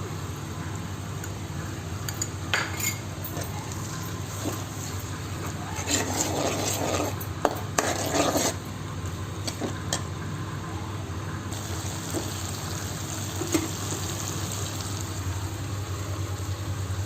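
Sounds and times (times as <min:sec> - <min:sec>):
sauce sizzling in a pan: 0:11.6 - 0:16.8.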